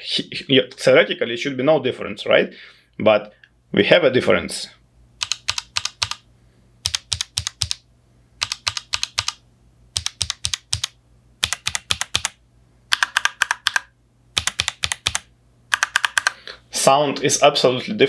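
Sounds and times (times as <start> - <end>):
mechanical keyboard typing: 5.2 - 6.2, 6.8 - 7.8, 8.4 - 16.4.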